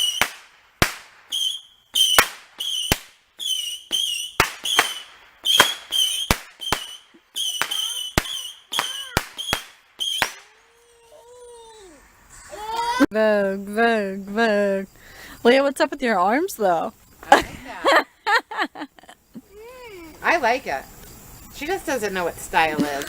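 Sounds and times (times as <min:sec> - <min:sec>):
fireworks bangs: 0:00.0 - 0:11.0
fireworks whistle: 0:00.0 - 0:11.0.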